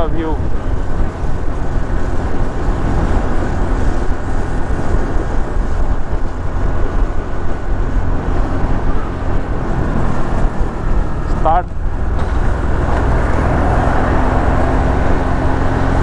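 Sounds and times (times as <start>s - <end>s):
motorcycle engine cruising: 0.0s - 16.0s
wind noise: 0.0s - 16.0s.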